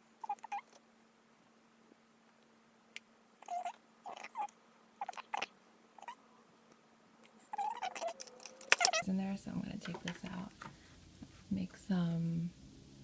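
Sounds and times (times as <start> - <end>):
faint steady hum: 0.0 - 13.0
plastic handling noises: 7.2 - 9.0.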